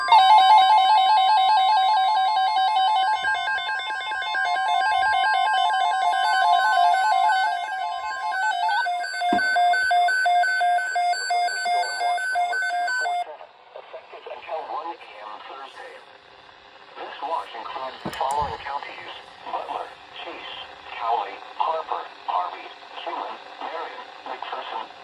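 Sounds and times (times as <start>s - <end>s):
warbling radio alert tone: 0.0s - 13.2s
steady warning alarm tone: 0.0s - 13.3s
loud repeating beep: 2.7s - 13.2s.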